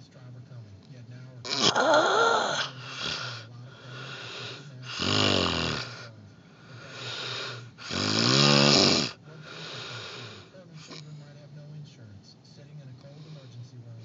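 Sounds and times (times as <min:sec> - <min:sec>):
quiet breaths: 0:00.0 - 0:14.0
man snoring loudly: 0:01.5 - 0:11.0.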